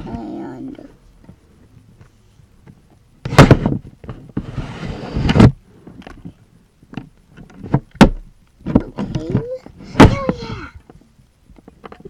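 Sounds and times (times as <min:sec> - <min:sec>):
rustling scrape: 0:03.3 - 0:06.4
loud knocks: 0:07.9 - 0:10.6.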